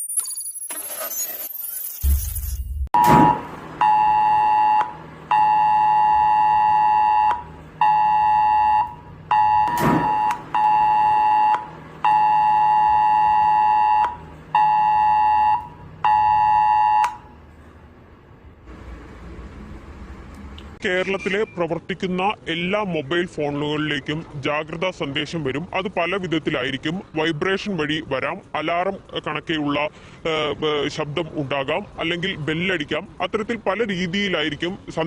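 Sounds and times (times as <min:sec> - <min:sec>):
two-pitch phone alert alarm: 0:03.0 - 0:17.3.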